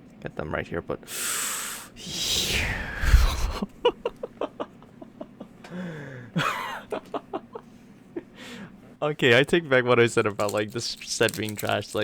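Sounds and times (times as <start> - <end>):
light clicks and taps: 10.2 - 12.0.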